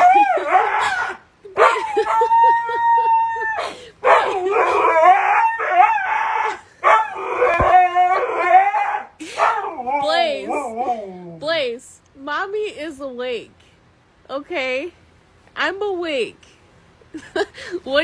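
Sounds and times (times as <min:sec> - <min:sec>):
dog howling: 0:00.0 - 0:11.4.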